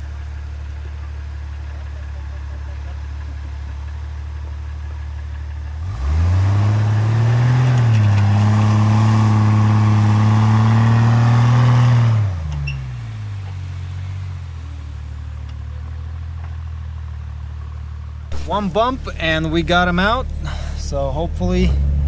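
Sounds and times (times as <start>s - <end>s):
engine revving: 0.0s - 16.0s, 18.3s - 22.0s.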